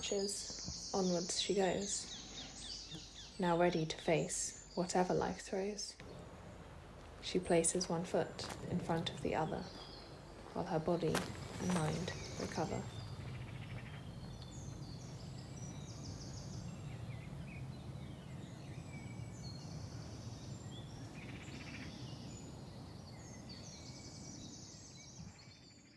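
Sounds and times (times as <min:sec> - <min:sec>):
small birds singing and chirping: 0:00.0 - 0:25.9
low background rumble: 0:05.9 - 0:21.0.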